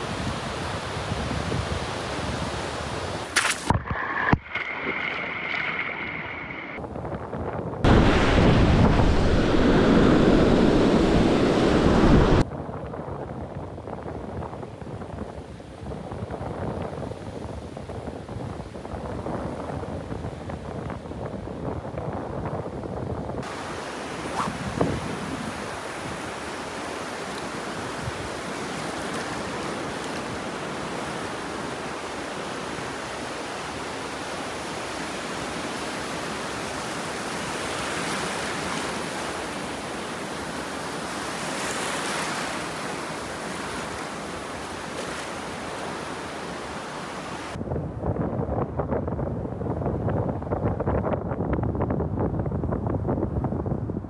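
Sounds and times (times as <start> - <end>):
wind buffeting microphone: 0.0 - 34.8, 47.4 - 54.0
surf washing onto beach: 7.8 - 12.4, 23.4 - 47.6.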